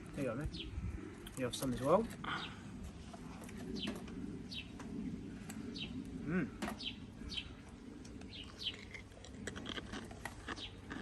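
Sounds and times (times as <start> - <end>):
songbird chirping: 3.6 - 9.4.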